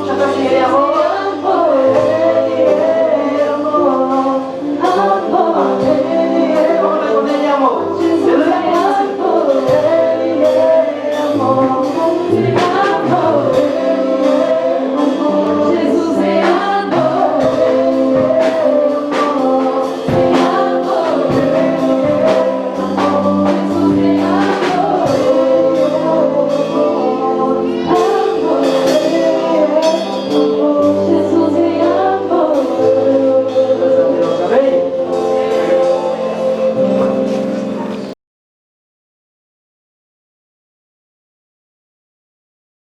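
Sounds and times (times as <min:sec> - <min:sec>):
gospel singing voices: 0:00.0 - 0:38.2
keyboard chords: 0:00.0 - 0:38.2
steady percussion: 0:04.2 - 0:38.2
bass line: 0:08.0 - 0:38.2.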